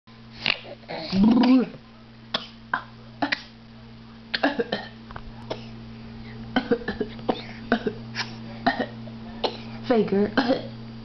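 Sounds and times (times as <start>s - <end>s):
person fake coughing: 6.6s - 8.0s, 10.4s - 10.7s.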